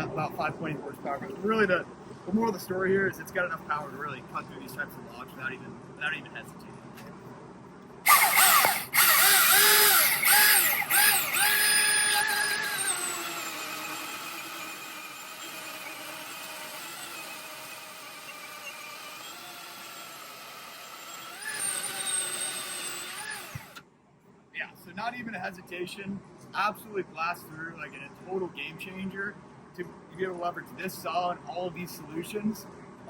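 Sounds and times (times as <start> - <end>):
chainsaw cutting a log: 8.1 - 23.8.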